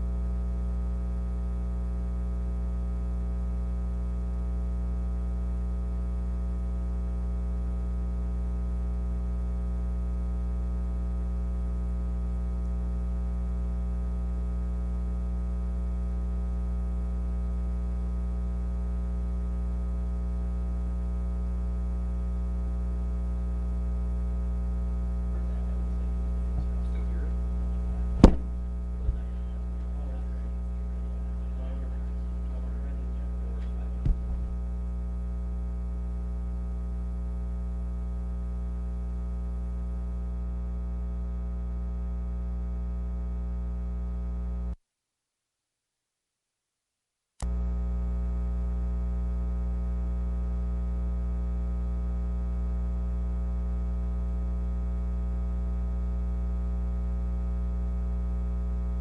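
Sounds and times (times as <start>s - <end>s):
electrical mains hum: 0.0s - 43.8s
sharp clicks: 28.2s - 28.6s.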